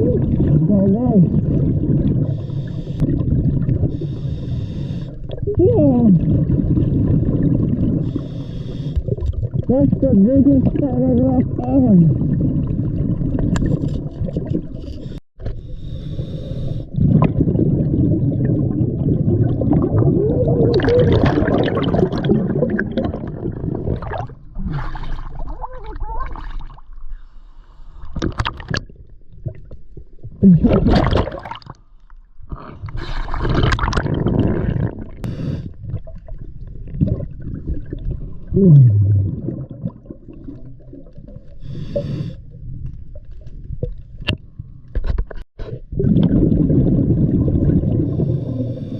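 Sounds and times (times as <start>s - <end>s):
diver exhaling bubbles underwater: 0.0s - 4.2s, 5.2s - 9.7s, 11.4s - 15.2s, 16.9s - 26.8s, 28.2s - 31.8s, 32.5s - 42.3s, 45.6s - 48.9s.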